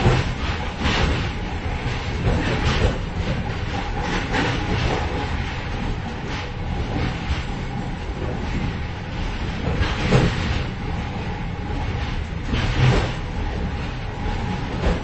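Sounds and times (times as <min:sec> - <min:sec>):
train rumble: 0:00.0 - 0:15.0.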